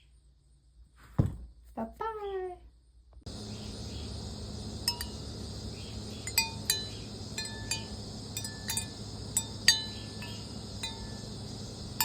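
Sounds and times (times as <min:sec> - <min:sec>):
steady low hum: 0:02.8 - 0:12.0
wind chime ringing: 0:04.8 - 0:05.2, 0:06.2 - 0:11.2.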